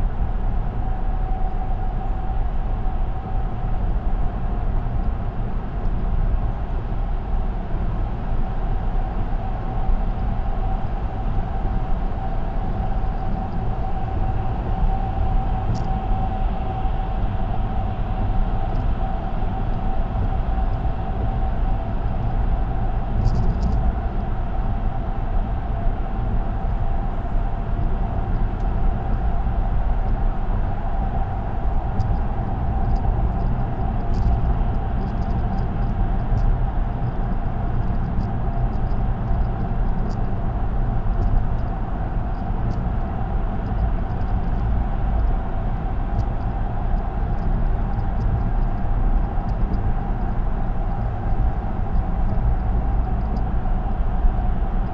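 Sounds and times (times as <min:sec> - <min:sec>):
car tyre road noise: 0:08.6 - 0:54.9
faint light ticks: 0:15.7 - 0:16.0, 0:23.2 - 0:23.9, 0:32.0 - 0:32.2, 0:32.8 - 0:36.5, 0:37.8 - 0:40.3, 0:42.3 - 0:42.9, 0:46.1 - 0:49.9, 0:51.3 - 0:53.5.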